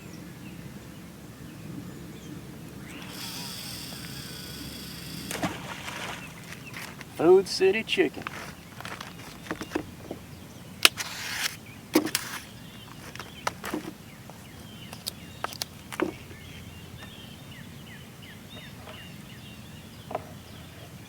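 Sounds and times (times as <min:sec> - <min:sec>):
brief rustle: 0:08.1 - 0:10.2, 0:10.8 - 0:16.2
handling clicks and knocks: 0:08.1 - 0:11.0, 0:12.0 - 0:16.4.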